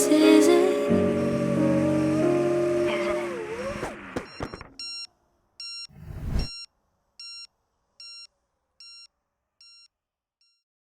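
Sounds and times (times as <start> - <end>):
brief rush of noise: 5.9 - 6.6.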